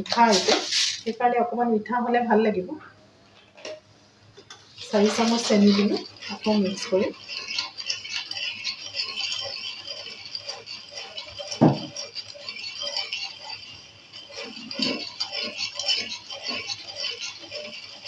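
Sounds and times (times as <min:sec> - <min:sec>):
spoon scraping and clinking in pan: 0:04.6 - 0:18.0
spoon knocking on pan: 0:11.4 - 0:12.0.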